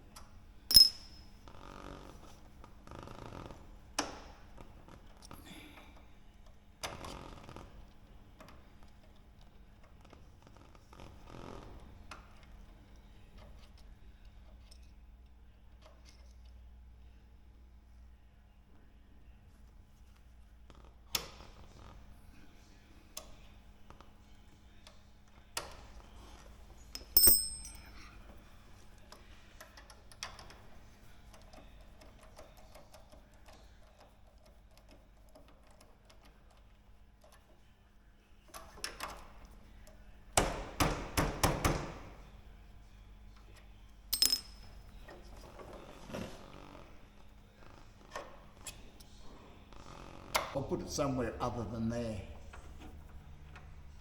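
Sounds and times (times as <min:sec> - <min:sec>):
hand tools clinking and knocking: 0:00.7 - 0:01.4, 0:27.0 - 0:28.1, 0:44.2 - 0:44.9
sharp ringing metallic clinks: 0:00.7 - 0:01.4, 0:27.0 - 0:28.0, 0:44.2 - 0:44.7
low steady hum: 0:00.7 - 0:01.5, 0:26.6 - 0:28.3.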